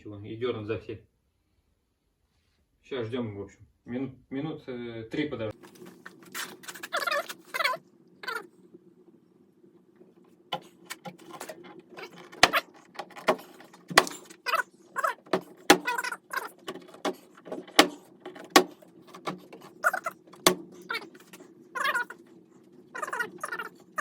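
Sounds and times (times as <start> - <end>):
steady low hum: 4.1 - 24.0
sharp clicks and knocks: 10.5 - 14.5, 15.2 - 21.4.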